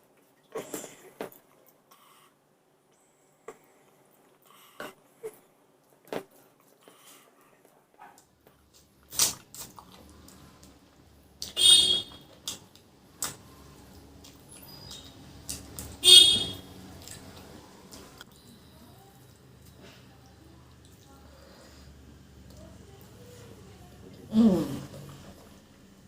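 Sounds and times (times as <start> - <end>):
loud mouth noises: 24.3 - 25.1.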